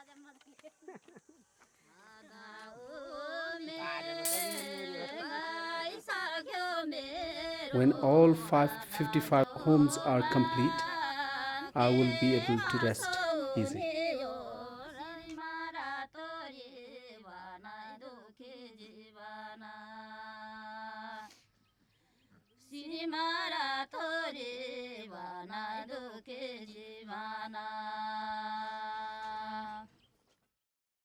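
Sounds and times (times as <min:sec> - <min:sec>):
person singing chant-like melody: 0:02.1 - 0:06.0, 0:07.0 - 0:15.3.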